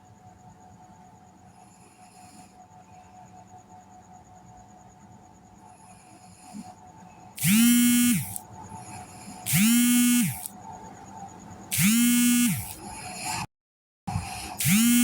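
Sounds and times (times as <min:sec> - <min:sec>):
buzzy snores: 0:14.2 - 0:15.0.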